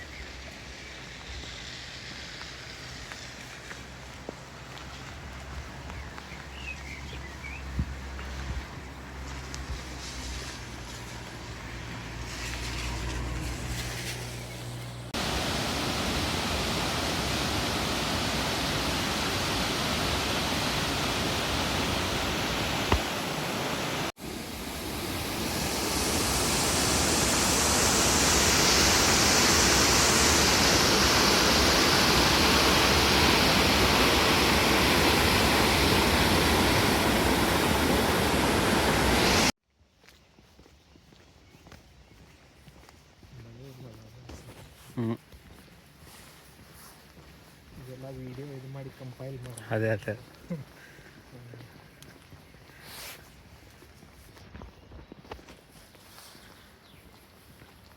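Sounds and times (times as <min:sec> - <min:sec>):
rushing stream water: 0:15.1 - 0:39.6.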